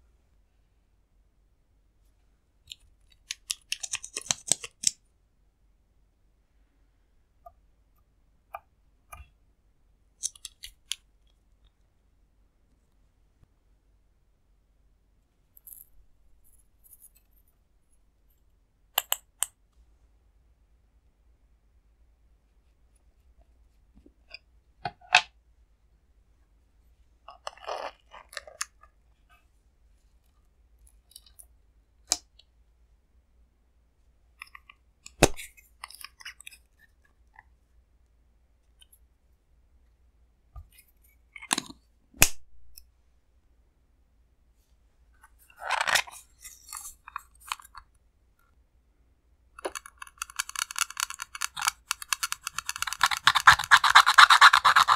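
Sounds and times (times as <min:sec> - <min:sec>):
sharp clicks of small hard objects: 0:49.6 - 0:53.8.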